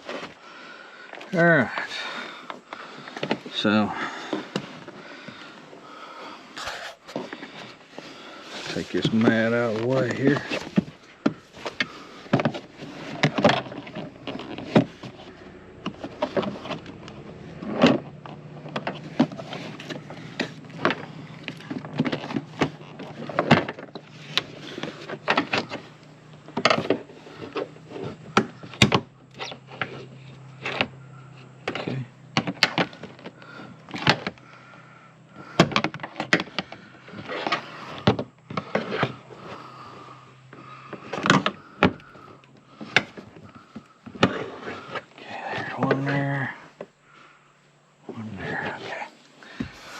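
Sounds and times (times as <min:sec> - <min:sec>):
steady low hum: 0:00.0 - 0:49.9
floor mat rustling: 0:48.6 - 0:49.9.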